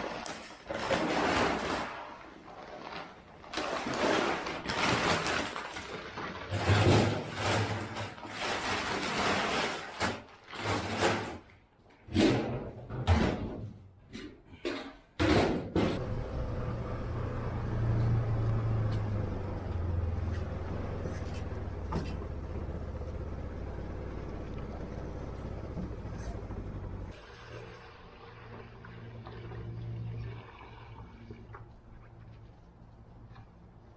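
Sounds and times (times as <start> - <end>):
knocks bangs and scraping: 0.0 - 27.2
low motor hum: 16.0 - 33.6.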